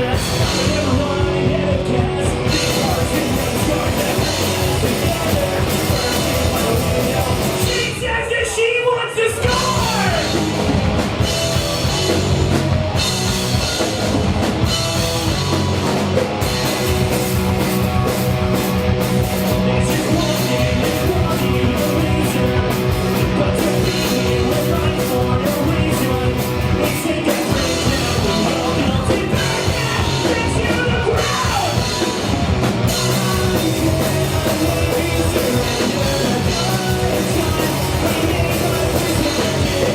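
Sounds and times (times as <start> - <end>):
person singing: 0.0 - 10.4, 19.4 - 39.9
rock band playing live: 0.0 - 39.9.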